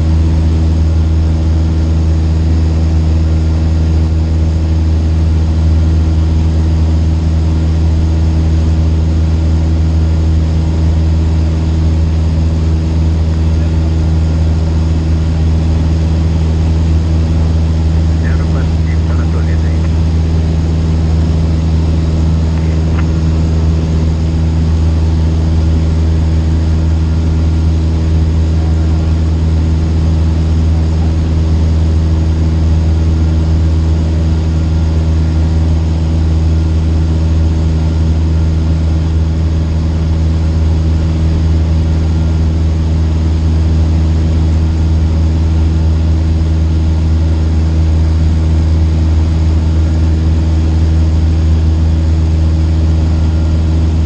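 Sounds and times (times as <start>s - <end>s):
light aircraft engine drone: 0.0s - 54.0s.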